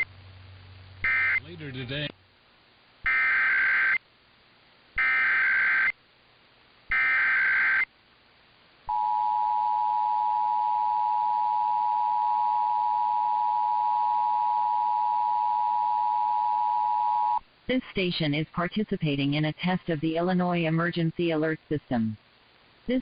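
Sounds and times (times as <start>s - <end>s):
warbling data bursts: 1.0s - 1.7s.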